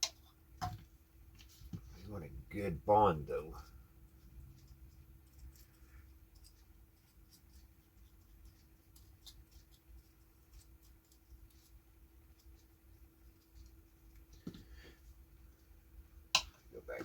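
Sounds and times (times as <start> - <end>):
faint steady hum: 0.0 - 17.0
brush scratching and ticking: 1.4 - 17.0.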